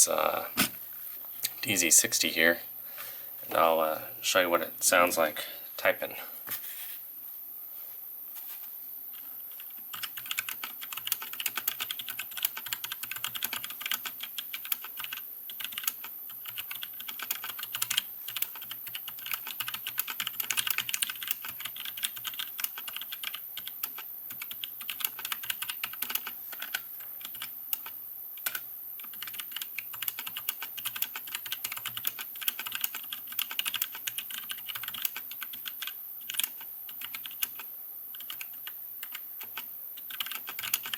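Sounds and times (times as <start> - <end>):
fast typing on mechanical keyboard: 9.5 - 40.9.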